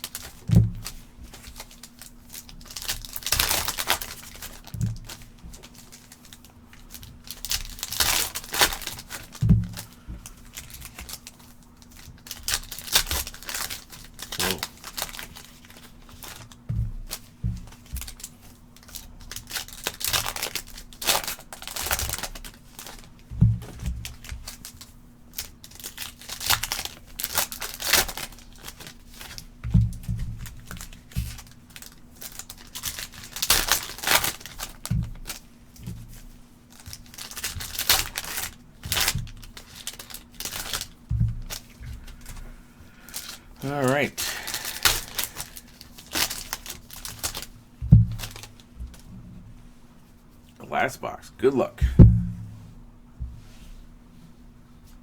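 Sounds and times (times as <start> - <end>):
foil wrappers tearing and crinkling: 0.0 - 23.2, 23.8 - 29.6, 30.4 - 49.0
faint steady hum: 0.0 - 55.0
soft handling thumps: 9.3 - 10.4, 16.6 - 18.2, 41.0 - 43.6, 47.7 - 50.4, 51.8 - 55.0.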